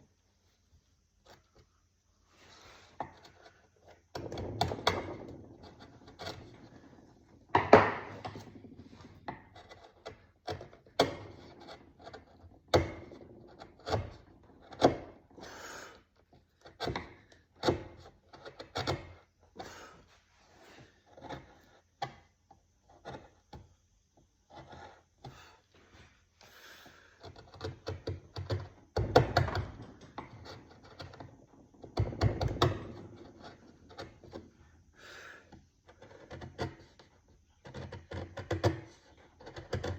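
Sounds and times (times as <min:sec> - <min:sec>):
wood rubbing and scraping: 0:00.5 - 0:23.7, 0:24.4 - 0:39.9
wood and tool knocking: 0:03.0 - 0:15.3, 0:16.6 - 0:19.7, 0:27.2 - 0:34.6.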